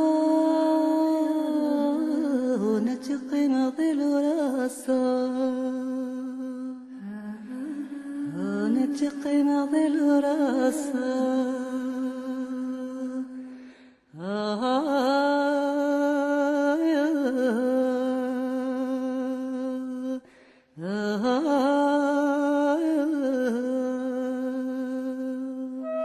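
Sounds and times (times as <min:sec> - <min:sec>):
solo voice singing long notes: 0:20.8 - 0:26.0.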